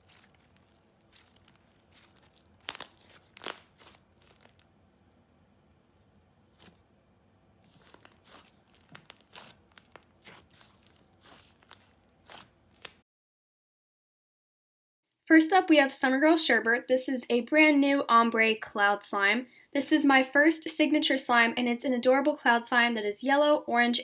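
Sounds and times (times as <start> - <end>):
slime squishing and crackling: 0.0 - 4.8, 7.7 - 13.0.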